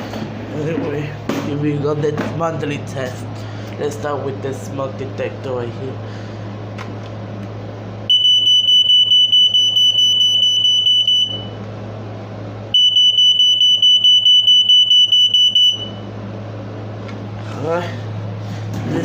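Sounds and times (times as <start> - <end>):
smoke detector alarm tone: 8.1 - 11.6, 12.7 - 16.1.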